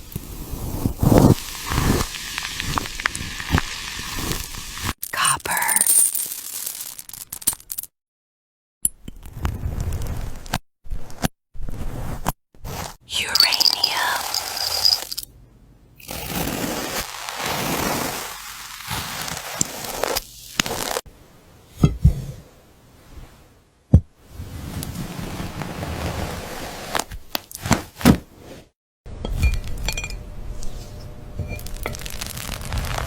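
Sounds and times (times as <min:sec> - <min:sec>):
crumbly spread crackling: 0:00.0 - 0:05.0, 0:16.1 - 0:21.0, 0:31.6 - 0:33.0.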